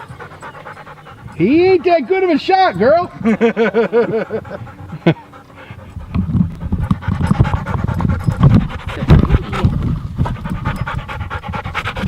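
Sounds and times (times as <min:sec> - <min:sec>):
dog panting loudly: 0:00.0 - 0:12.0.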